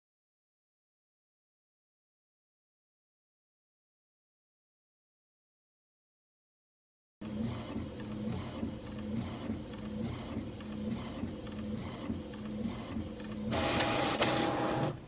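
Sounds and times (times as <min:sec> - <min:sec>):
small machine whirring: 0:07.2 - 0:15.0.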